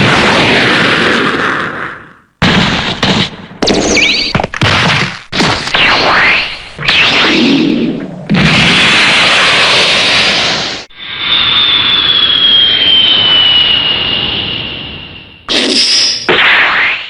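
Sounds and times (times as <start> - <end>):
jet engine roar with whine: 9.2 - 15.9.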